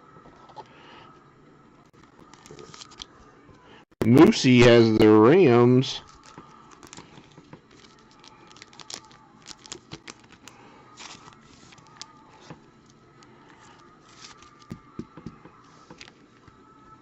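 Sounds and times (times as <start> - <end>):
wrappers crinkling: 2.2 - 3.1, 6.0 - 13.0, 13.7 - 14.8.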